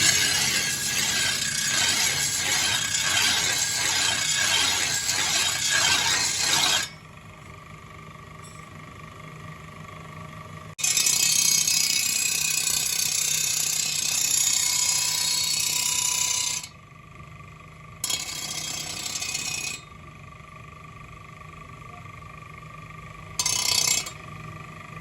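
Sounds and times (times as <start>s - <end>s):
power tool running: 0.0s - 6.9s.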